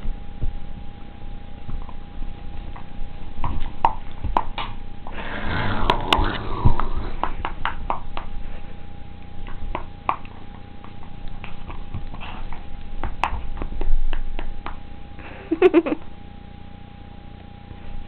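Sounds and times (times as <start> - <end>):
noisy rush: 4.8 - 9.2.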